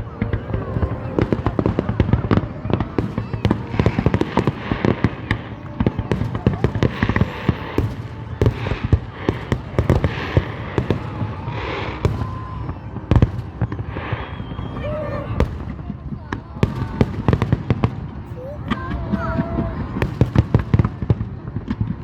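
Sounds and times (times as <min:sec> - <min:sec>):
fireworks bangs and crackling: 0:00.0 - 0:22.0
people's voices: 0:00.0 - 0:22.0.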